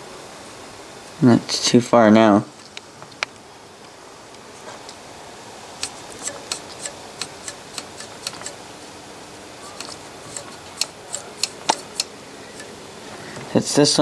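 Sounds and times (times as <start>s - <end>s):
faint steady hiss: 0.0s - 14.0s
sharp metal clicks: 5.8s - 12.9s.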